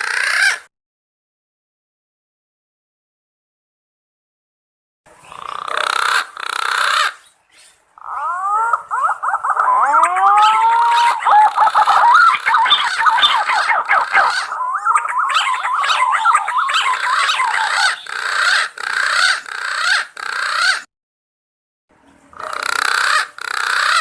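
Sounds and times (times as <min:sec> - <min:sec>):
pigeons calling with whistled notes: 0:05.6 - 0:20.1.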